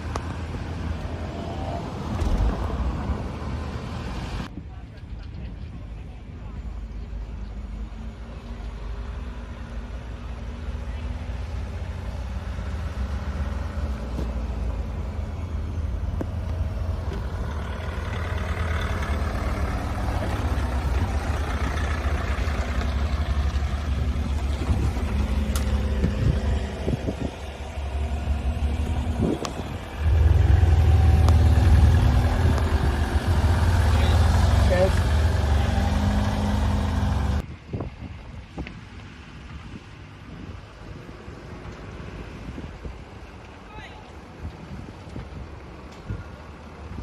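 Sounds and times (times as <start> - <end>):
vehicle engines idling: 0.0 - 37.5.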